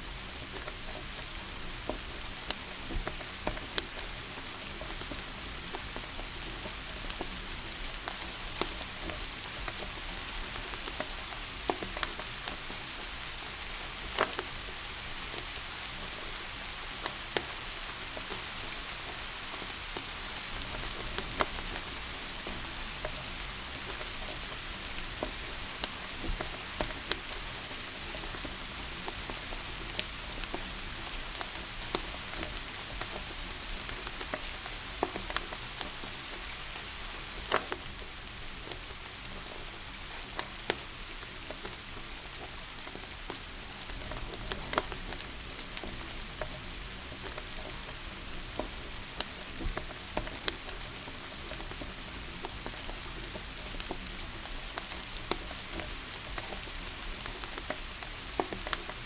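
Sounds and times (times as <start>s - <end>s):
steady rain hiss: 0.0s - 59.0s
wood fire crackling: 0.0s - 59.0s.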